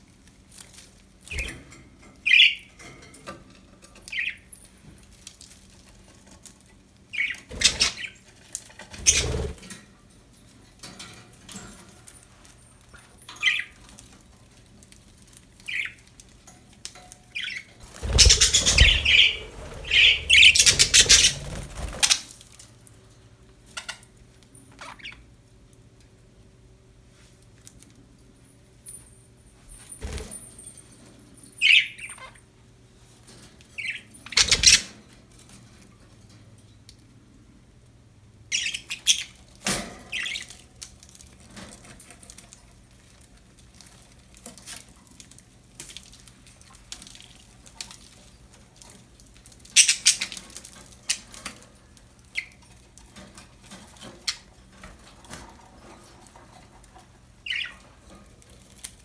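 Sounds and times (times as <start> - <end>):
wing flapping and rustling: 7.5 - 9.8, 17.8 - 22.7
budgerigars chirping: 17.4 - 22.2.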